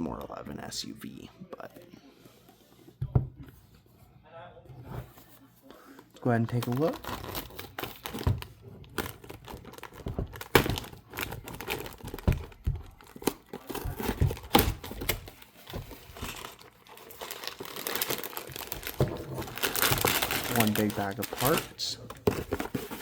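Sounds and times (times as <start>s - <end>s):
plastic bags crinkling: 5.8s - 23.0s
cardboard box being opened: 6.7s - 23.0s.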